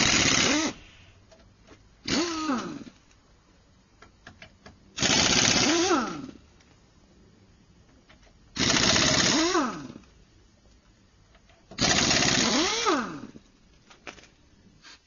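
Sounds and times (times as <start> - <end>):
pneumatic impact wrench rattling: 0.0 - 0.8, 2.0 - 2.9, 5.0 - 6.4, 8.6 - 10.0, 11.7 - 13.4.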